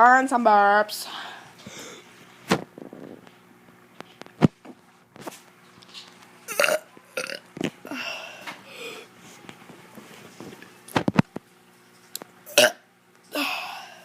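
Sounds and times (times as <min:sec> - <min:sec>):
child burping: 0:06.5 - 0:08.0, 0:12.5 - 0:12.8.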